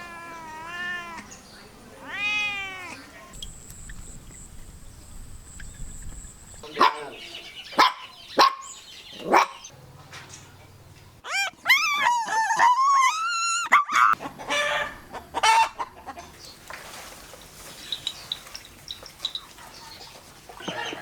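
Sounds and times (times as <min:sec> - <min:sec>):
chickens clucking: 0:14.1 - 0:16.7, 0:17.9 - 0:21.0.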